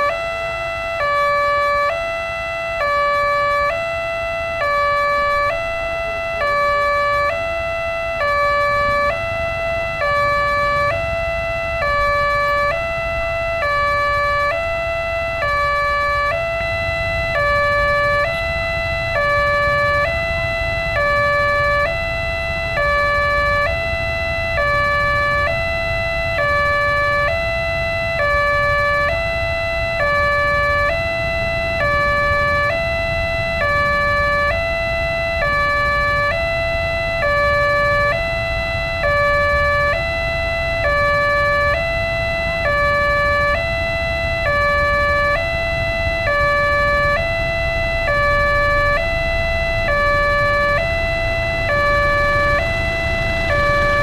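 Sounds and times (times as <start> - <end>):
two-tone electronic warning siren: 0.0 - 54.0.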